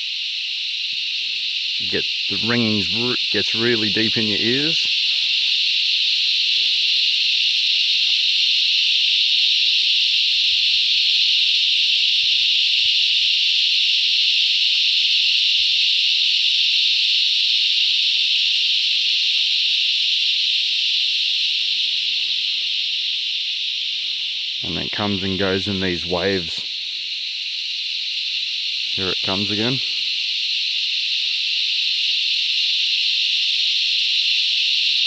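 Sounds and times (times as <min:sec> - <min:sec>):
cicadas droning: 0:00.0 - 0:35.0.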